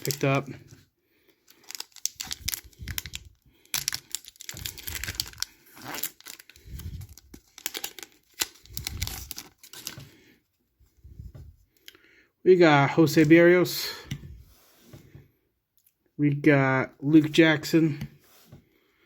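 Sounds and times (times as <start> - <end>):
wrapper tearing and crinkling: 0.0 - 0.4, 1.5 - 10.0
cards being handled: 1.6 - 10.2.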